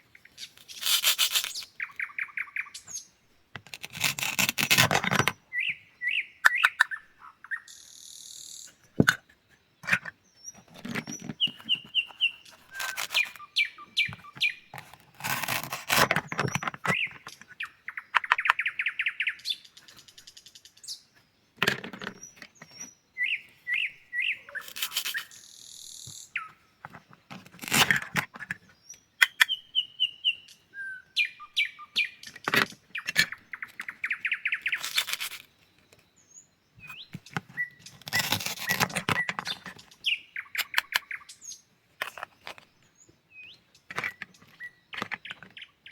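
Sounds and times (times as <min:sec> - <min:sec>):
bird chirps and trills: 0:00.1 - 0:08.9, 0:09.8 - 0:21.1, 0:21.9 - 0:45.9
knife cutting through vegetables: 0:00.6 - 0:01.7, 0:03.6 - 0:05.4, 0:09.8 - 0:13.5, 0:14.1 - 0:17.0, 0:24.5 - 0:25.3, 0:27.4 - 0:28.2, 0:34.6 - 0:35.5, 0:37.2 - 0:39.8.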